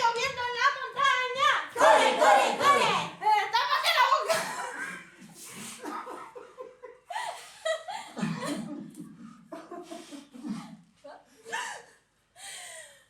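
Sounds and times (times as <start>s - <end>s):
people laughing and giggling: 3.5s - 10.8s.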